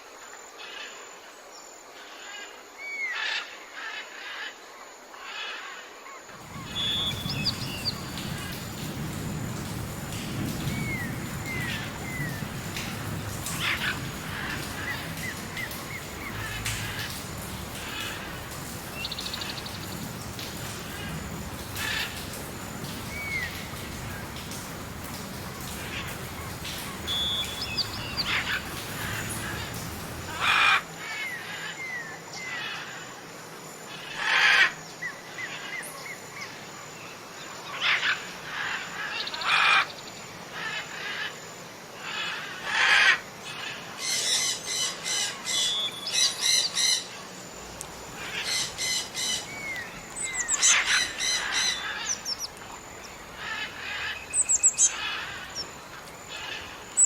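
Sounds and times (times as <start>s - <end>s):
birds squawking: 6.4s - 8.9s, 9.6s - 30.8s, 48.1s - 57.0s
birds chattering trills: 6.4s - 30.9s, 44.2s - 57.0s
whistled bird notes: 6.6s - 8.1s, 27.1s - 28.3s.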